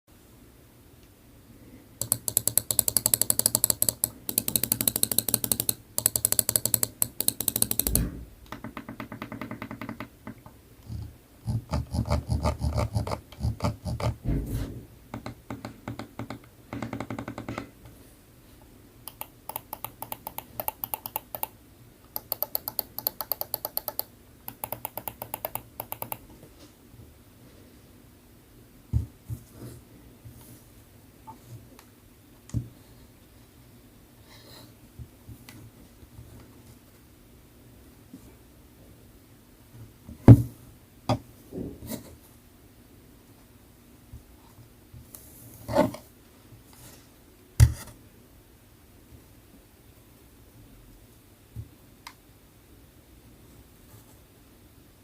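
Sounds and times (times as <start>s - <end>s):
mouse buttons clicking rapidly: 2.0s - 8.1s, 19.1s - 26.2s.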